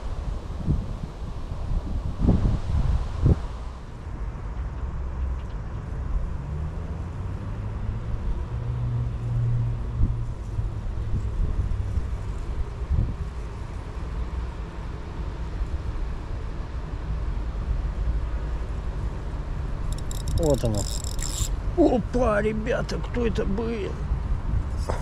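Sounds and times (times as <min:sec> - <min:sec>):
wind buffeting microphone: 0:00.3 - 0:03.6.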